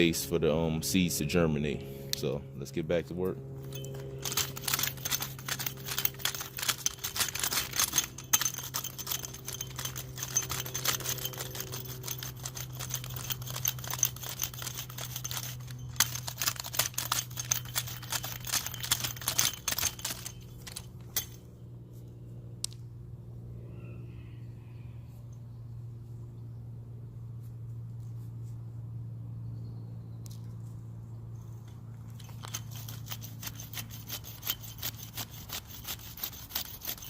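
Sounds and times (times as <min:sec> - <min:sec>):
steady low hum: 0:00.0 - 0:37.0
soil scraping and crunching: 0:03.6 - 0:21.4, 0:31.4 - 0:37.0.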